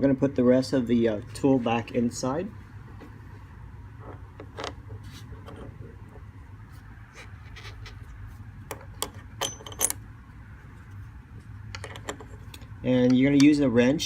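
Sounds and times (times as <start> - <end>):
low steady hum: 0.0 - 14.0
metal tool parts clinking: 9.0 - 10.0.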